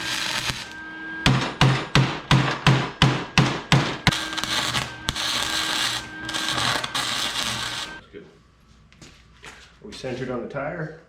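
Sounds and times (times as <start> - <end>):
electric welder crackling: 0.0 - 1.5, 3.6 - 8.0
hammer on sheet metal: 1.2 - 4.2.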